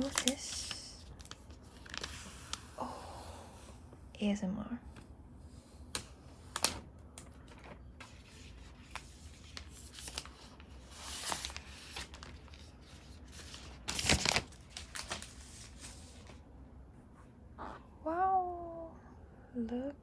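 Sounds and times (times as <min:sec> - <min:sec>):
paper peeling: 0:00.0 - 0:02.8, 0:05.6 - 0:16.4
paper rustling: 0:00.0 - 0:02.8, 0:05.8 - 0:16.4.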